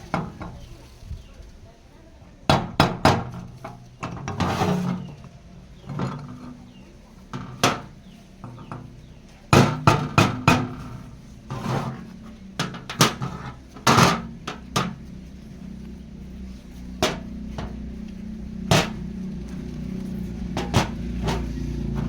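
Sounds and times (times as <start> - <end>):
metal clanking: 2.9 - 15.1, 17.0 - 22.0
metal scraping: 3.2 - 22.0.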